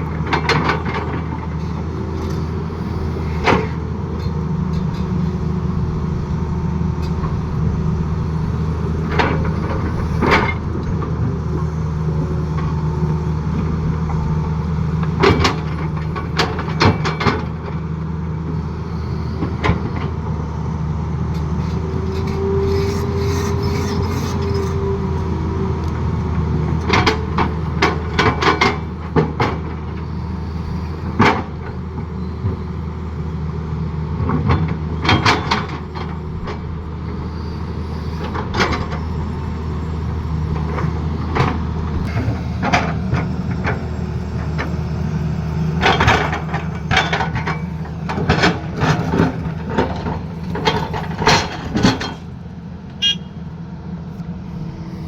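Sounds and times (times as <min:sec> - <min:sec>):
excavator diesel engine running: 0:00.0 - 0:55.0
metal clanks and knocks: 0:00.2 - 0:02.6, 0:15.0 - 0:17.8, 0:26.8 - 0:30.0, 0:34.2 - 0:36.6, 0:45.8 - 0:52.3
high whine: 0:54.3 - 0:55.0.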